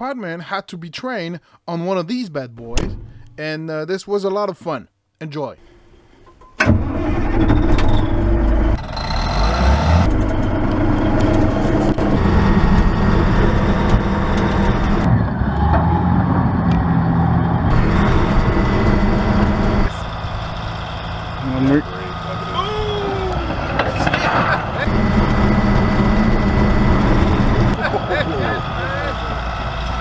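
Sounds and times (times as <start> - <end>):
bulldozer diesel engine running: 6.8 - 30.0.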